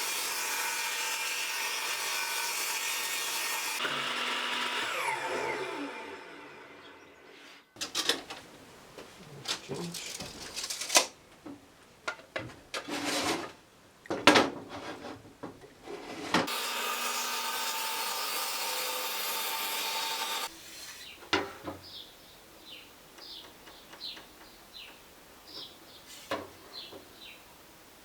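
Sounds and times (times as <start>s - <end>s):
power tool whining: 1.8s - 7.2s
wood knocking and rubbing: 7.8s - 16.5s
small birds chirping: 21.0s - 27.6s.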